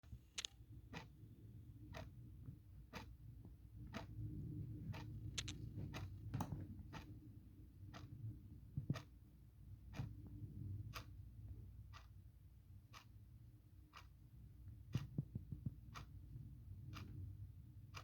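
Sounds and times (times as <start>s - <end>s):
clock ticking: 0.4s - 9.2s, 9.8s - 11.2s, 11.9s - 12.2s, 12.8s - 13.2s, 13.9s - 17.3s
extra clicks: 5.4s - 6.5s.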